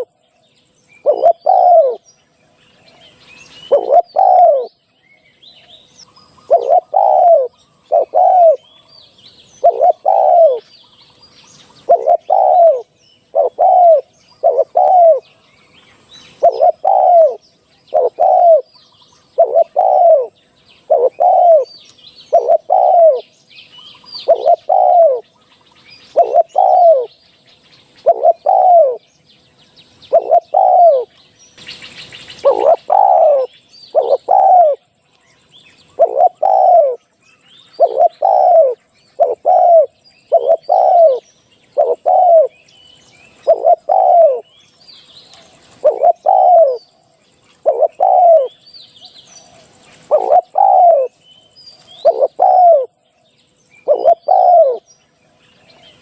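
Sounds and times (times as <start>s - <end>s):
dove cooing: 0.0s - 0.2s, 1.0s - 2.1s, 3.1s - 4.7s, 5.8s - 8.8s, 9.4s - 10.6s, 11.8s - 15.3s, 16.3s - 23.3s, 24.1s - 25.3s, 26.0s - 27.1s, 28.0s - 29.0s, 30.1s - 31.1s, 32.3s - 34.9s, 35.9s - 44.6s, 45.3s - 47.0s, 47.6s - 48.6s, 49.4s - 51.2s, 51.9s - 53.0s, 53.8s - 54.9s
small birds chirping: 0.0s - 56.0s.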